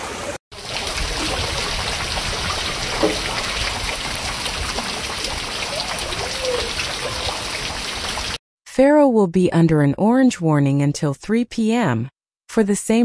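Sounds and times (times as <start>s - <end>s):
running floodwater: 0.0s - 8.4s
rain: 0.1s - 8.4s.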